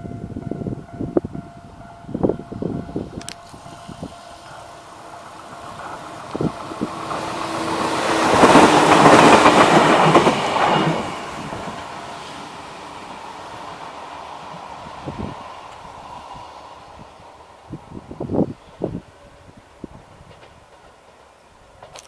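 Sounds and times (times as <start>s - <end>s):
electric train passing: 0.0s - 22.0s
wheels clattering on rails: 2.3s - 15.9s, 19.8s - 22.0s.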